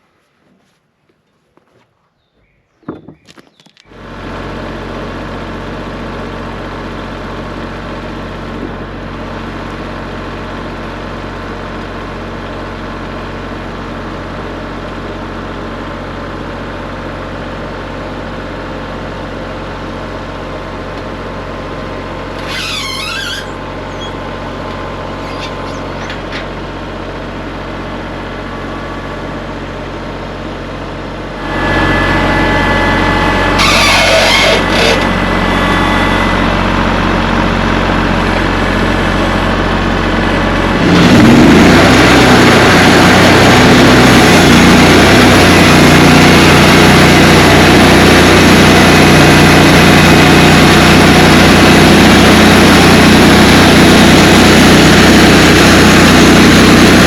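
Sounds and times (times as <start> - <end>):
engine running: 3.8 - 57.0
high squeal: 22.4 - 24.3, 25.2 - 26.2, 33.2 - 35.2.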